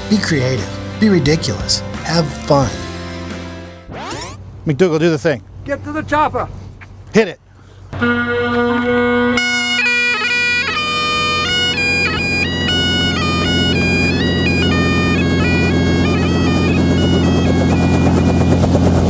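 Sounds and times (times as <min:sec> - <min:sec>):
bagpipes playing a tune: 0:08.0 - 0:19.0.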